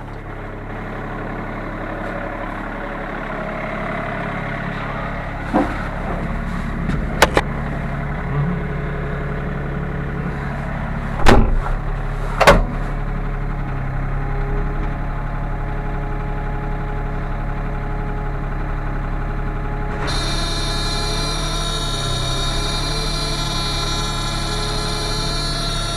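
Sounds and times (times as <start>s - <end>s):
excavator diesel engine running: 0.0s - 25.9s
loud clunks: 4.2s - 8.5s, 10.2s - 13.0s, 19.9s - 25.9s
high whining sound: 20.0s - 25.9s.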